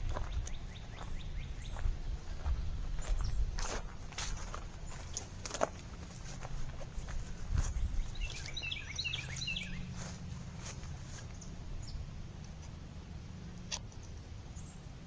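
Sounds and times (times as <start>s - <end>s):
bird chirping: 0.0s - 3.5s, 7.0s - 10.2s, 11.2s - 12.1s
footsteps: 0.0s - 8.6s, 9.3s - 11.4s
steady low rumble: 0.0s - 15.0s.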